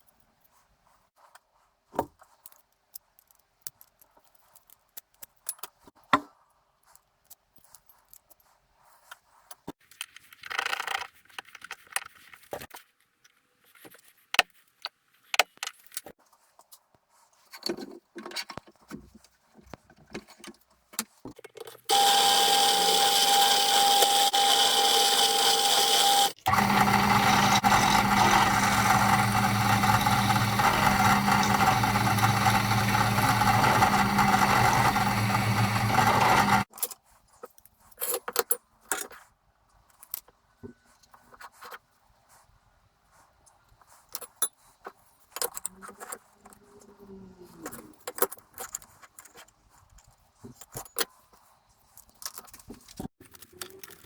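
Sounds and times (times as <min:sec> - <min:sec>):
electric power tool whining: 0:21.9 - 0:36.7.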